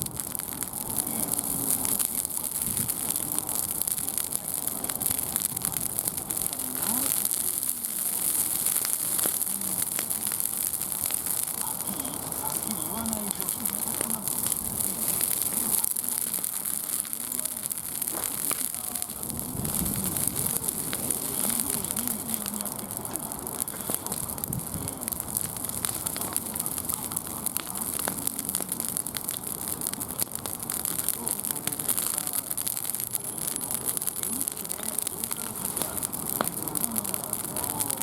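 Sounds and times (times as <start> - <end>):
wood fire crackling: 0.0 - 38.0
faint voice murmuring: 0.8 - 38.0.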